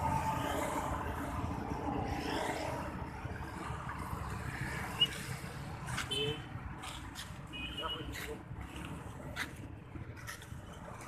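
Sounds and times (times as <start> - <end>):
street traffic: 0.0 - 11.0.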